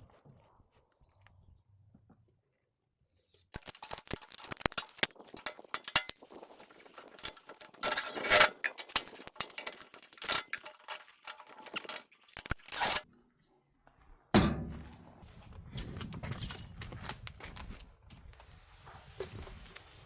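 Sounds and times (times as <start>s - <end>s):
hand tools and metal parts clinking: 3.6s - 13.0s, 14.4s - 15.2s
metal scraping rattle: 3.6s - 13.0s, 14.4s - 15.2s.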